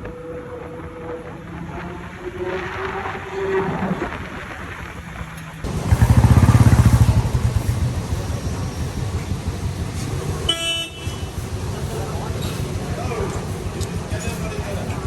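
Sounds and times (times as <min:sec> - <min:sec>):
street traffic: 0:05.4 - 0:15.0
sports car engine roaring: 0:05.6 - 0:15.0
vehicle horn beep: 0:10.4 - 0:11.5.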